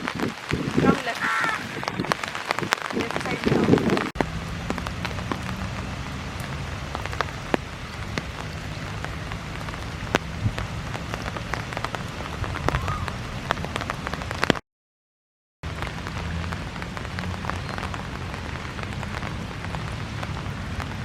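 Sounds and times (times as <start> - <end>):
steady rain falling: 0.0 - 14.6, 15.6 - 21.0.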